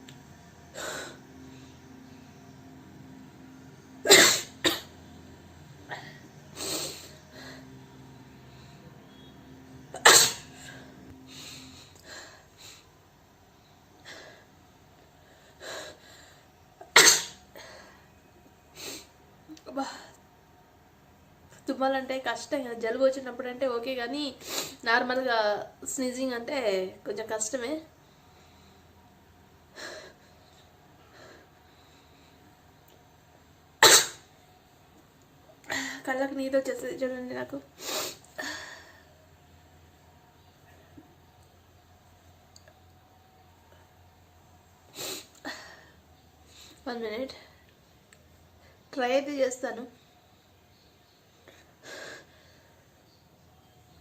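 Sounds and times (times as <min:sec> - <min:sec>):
woman sneezing loudly: 0:10.0 - 0:10.5, 0:16.9 - 0:17.4, 0:33.8 - 0:34.2.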